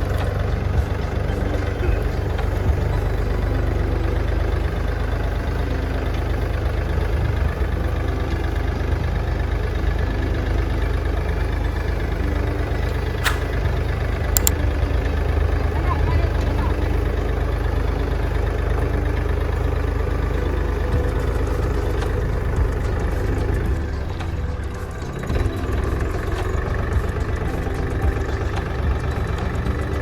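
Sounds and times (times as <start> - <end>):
engine rumbling: 0.0 - 30.0
short sharp clicks: 13.2 - 13.6, 14.4 - 14.6.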